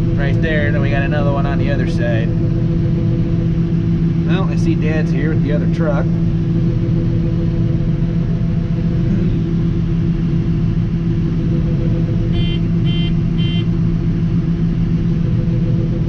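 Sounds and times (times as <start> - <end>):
combine harvester engine droning: 0.0 - 16.0
short electronic beeps: 12.3 - 13.7.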